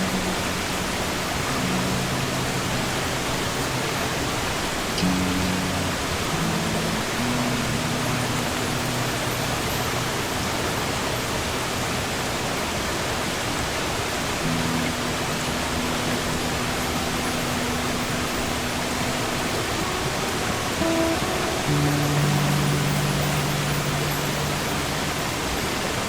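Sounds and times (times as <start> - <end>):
sea surf rushing: 0.0 - 26.0
acoustic guitar: 5.0 - 11.3, 14.4 - 25.8.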